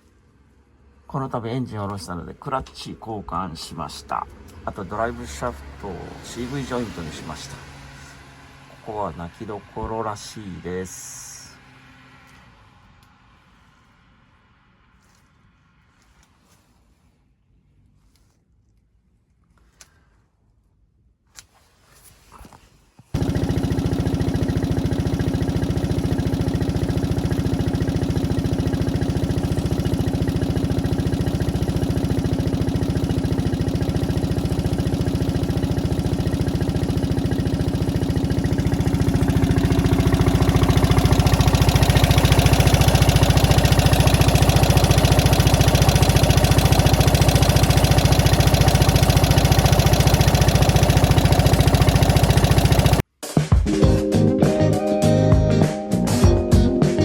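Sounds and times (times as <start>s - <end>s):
two-cylinder engine running: 3.9s - 11.6s, 23.2s - 53.0s.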